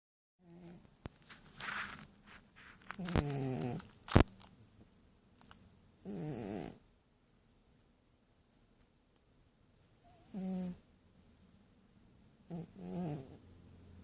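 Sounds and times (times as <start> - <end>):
cat snoring: 0.4 - 0.8, 3.0 - 3.9, 6.0 - 6.8, 10.0 - 10.8, 12.4 - 13.6.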